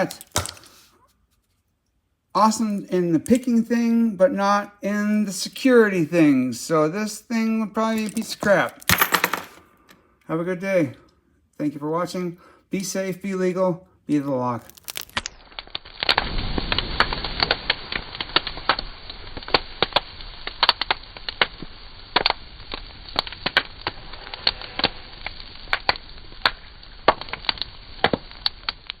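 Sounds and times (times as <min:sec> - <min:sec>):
crackling and snapping: 0:00.0 - 0:01.6, 0:02.4 - 0:03.9, 0:14.1 - 0:29.0
steady hiss: 0:15.4 - 0:29.0.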